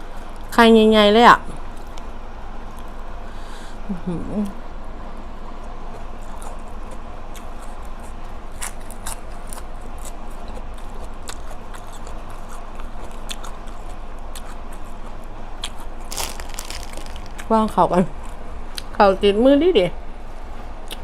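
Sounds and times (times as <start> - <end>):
chewing: 6.0 - 17.5.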